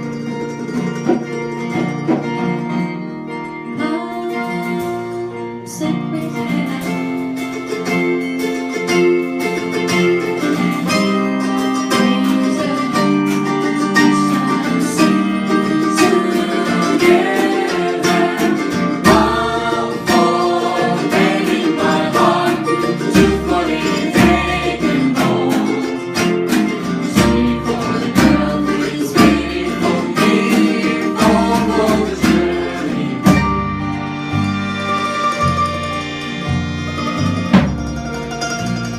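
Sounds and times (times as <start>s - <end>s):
plucked acoustic strings: 0.0s - 38.9s
person singing: 3.7s - 7.4s, 11.9s - 33.6s
low bass notes: 16.2s - 38.9s.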